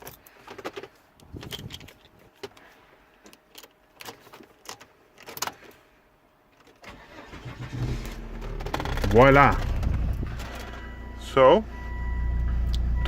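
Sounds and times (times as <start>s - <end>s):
sharp clicks and rattles: 0.0s - 5.8s, 8.4s - 10.8s.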